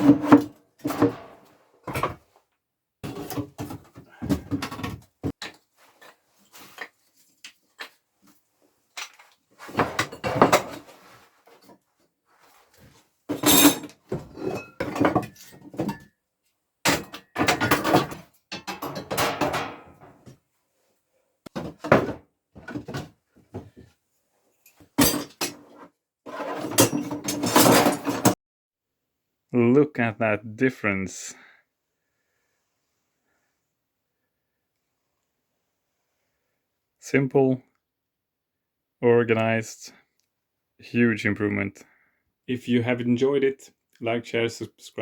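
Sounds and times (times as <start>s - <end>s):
wood and metal offcuts clattering: 0.0s - 2.2s, 3.0s - 6.9s, 9.0s - 11.8s, 13.3s - 16.0s, 16.9s - 20.2s, 25.0s - 28.4s.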